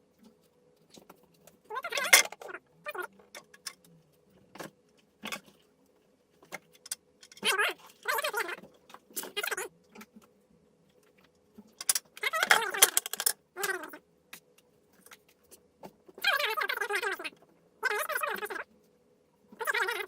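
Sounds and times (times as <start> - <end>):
plastic parts clicking and clattering: 0.9 - 2.6, 3.2 - 3.9, 6.4 - 10.2, 11.6 - 13.9.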